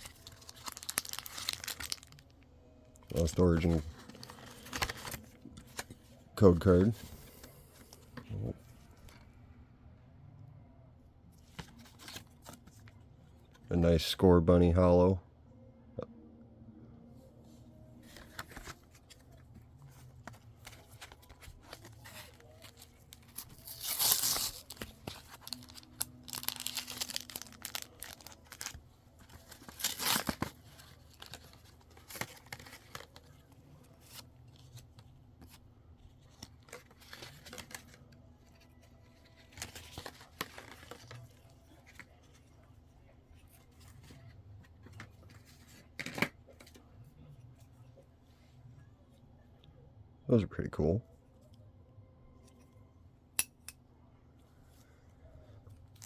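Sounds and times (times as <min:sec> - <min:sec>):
packaging torn and crinkled: 0:00.0 - 0:02.3, 0:21.0 - 0:33.3, 0:36.4 - 0:38.0, 0:39.3 - 0:41.5
rustling of cards and wrapper: 0:00.0 - 0:09.1, 0:11.4 - 0:13.7, 0:18.0 - 0:46.9.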